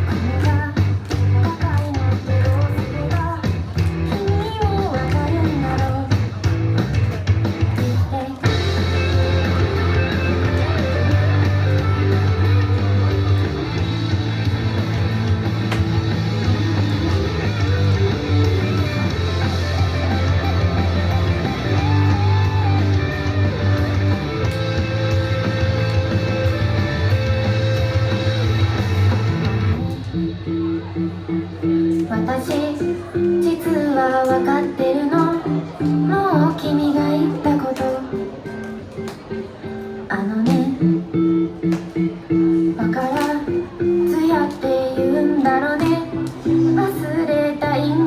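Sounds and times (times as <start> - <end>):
rock pop song with singing: 0.0 - 6.7
heavy bass line: 8.5 - 31.0.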